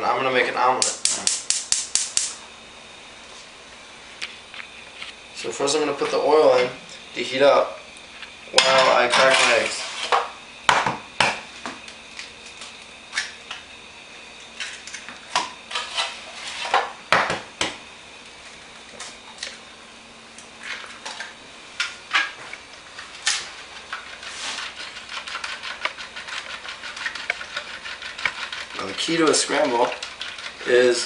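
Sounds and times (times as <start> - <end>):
utensils clinking against dish: 8.6 - 10.2
eggs beaten in bowl: 23.9 - 31.0.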